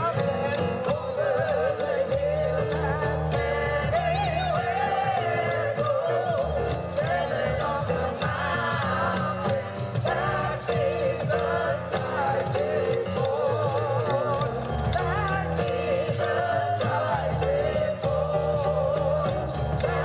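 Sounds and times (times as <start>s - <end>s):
christmas music: 0.0s - 20.0s
jingle bells shaken: 0.0s - 20.0s.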